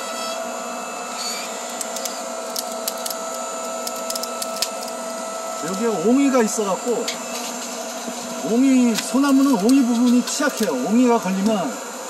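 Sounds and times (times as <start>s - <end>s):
hydraulic motor humming: 0.0s - 12.0s
wood cracking: 1.8s - 5.1s.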